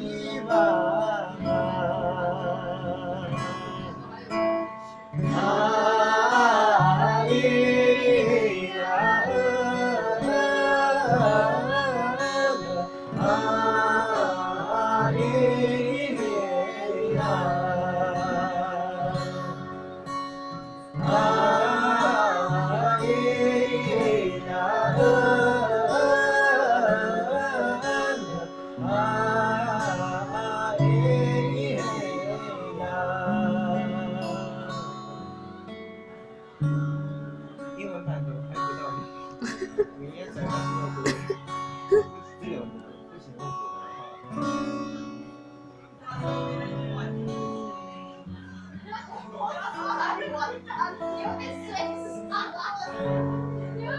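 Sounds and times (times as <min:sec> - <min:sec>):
person singing with vibrato: 0:00.0 - 0:35.7
plucked acoustic guitar: 0:00.0 - 0:53.9.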